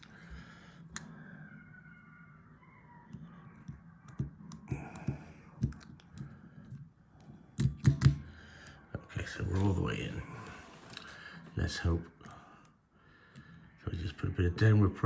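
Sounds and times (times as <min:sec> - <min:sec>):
lock pick clicking and scraping: 0:00.9 - 0:01.1, 0:03.1 - 0:08.2.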